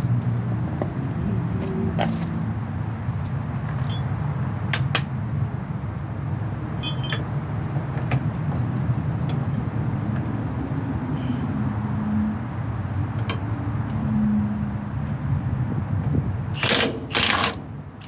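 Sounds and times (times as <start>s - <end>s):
metal tools clinking: 0.0s - 0.2s, 3.6s - 4.2s, 6.8s - 7.3s.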